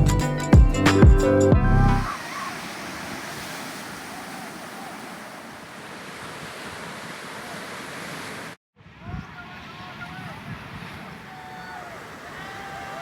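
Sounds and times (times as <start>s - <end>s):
music: 0.0s - 2.1s
waves breaking: 2.0s - 13.0s.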